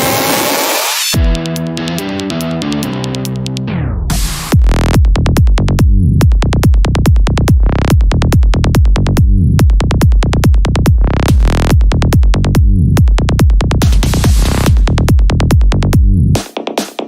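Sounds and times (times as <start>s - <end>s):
electronic dance music: 0.0s - 5.4s, 7.3s - 12.4s, 13.0s - 17.0s.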